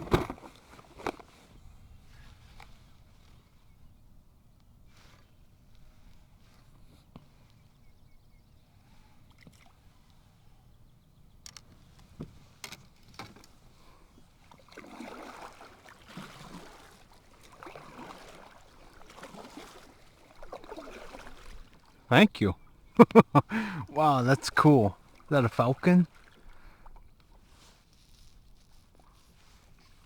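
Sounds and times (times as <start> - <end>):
water swishes and splashes: 9.1 - 10.2, 12.4 - 22.1, 23.8 - 30.0.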